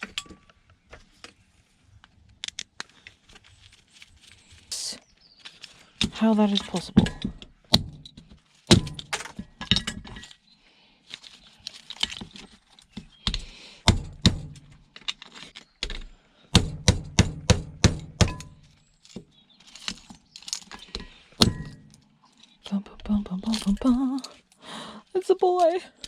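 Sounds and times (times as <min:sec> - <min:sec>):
plastic and metal parts clinking: 0:02.4 - 0:10.4, 0:11.0 - 0:13.5, 0:14.5 - 0:16.2, 0:18.3 - 0:24.6.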